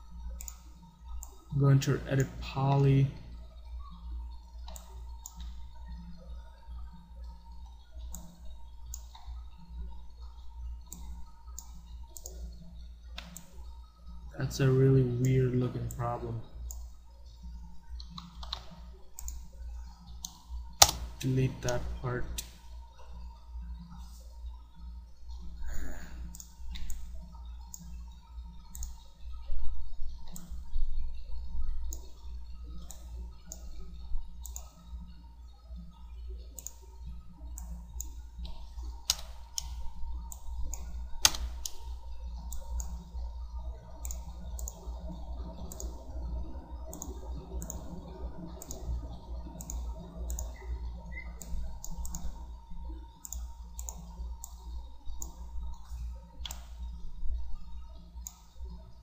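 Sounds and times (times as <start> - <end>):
steady low hum: 0.0 - 59.0
computer mouse clicking: 0.2 - 1.4, 4.6 - 6.2, 7.2 - 13.7, 18.0 - 22.6, 26.2 - 34.8, 36.5 - 36.9, 37.5 - 43.2, 43.9 - 52.6, 53.2 - 57.4, 58.2 - 58.7.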